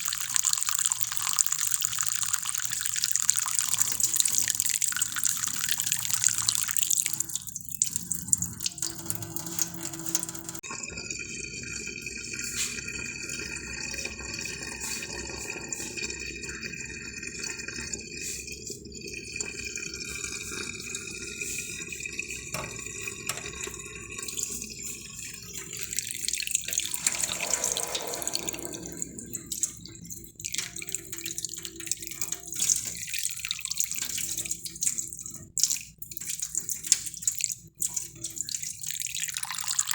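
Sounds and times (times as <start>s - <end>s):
water running and splashing: 0.0s - 10.6s, 20.1s - 39.9s.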